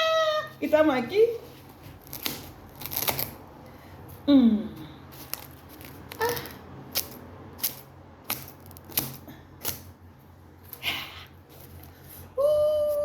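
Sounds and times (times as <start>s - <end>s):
scissors snipping wrapping: 2.0s - 3.4s, 5.2s - 9.9s.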